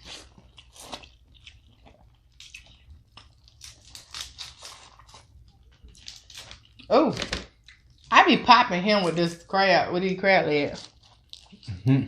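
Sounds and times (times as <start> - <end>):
chewing: 0.0 - 6.9, 10.7 - 12.0
crab legs cracking and crunching: 0.0 - 8.1.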